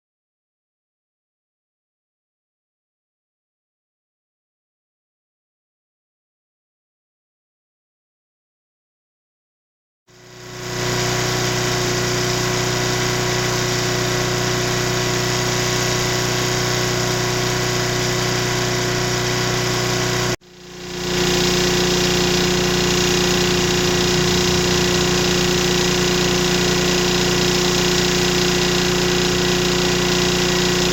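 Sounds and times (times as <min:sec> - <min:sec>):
portable generator engine running: 0:10.1 - 0:30.9.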